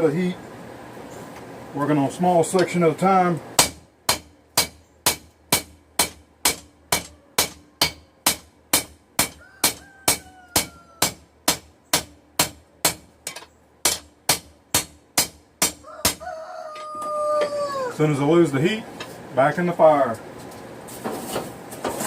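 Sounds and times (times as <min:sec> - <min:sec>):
hammer striking steel on anvil: 0:03.6 - 0:16.2.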